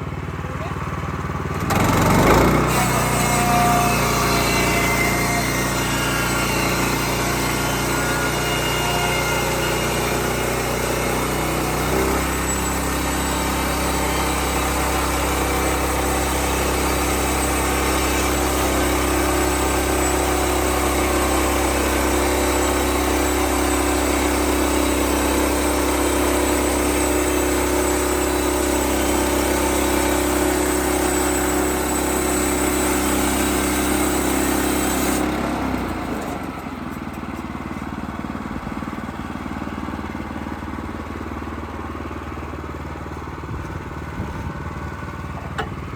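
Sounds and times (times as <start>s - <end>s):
sawmill engine running: 0.0s - 45.9s.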